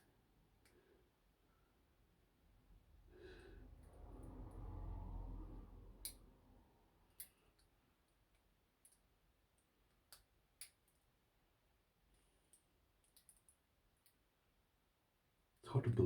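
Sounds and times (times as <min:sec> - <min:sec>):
soft low rumble: 0:02.5 - 0:07.0.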